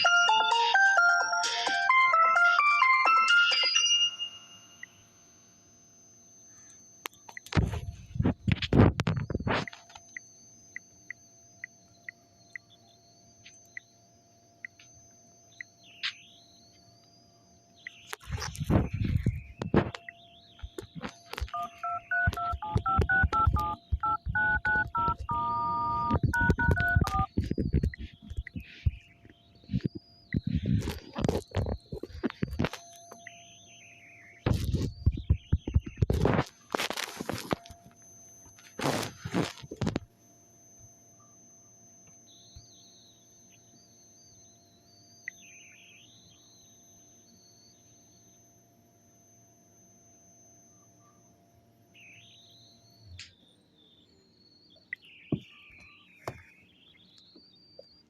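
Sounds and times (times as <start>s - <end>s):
high warbling phone tone: 18.3s - 36.4s
phone keypad dial tones: 20.8s - 28.6s.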